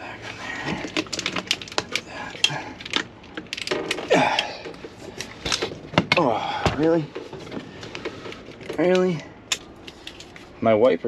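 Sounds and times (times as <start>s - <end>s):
plastic and metal parts clicking: 0.7s - 5.8s.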